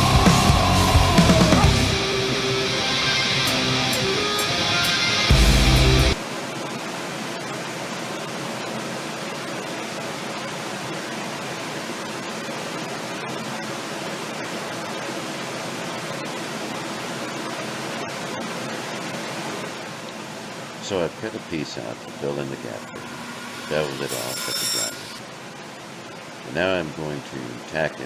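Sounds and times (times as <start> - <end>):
heavy metal music: 0.0 - 6.2
steady hiss: 13.0 - 28.0.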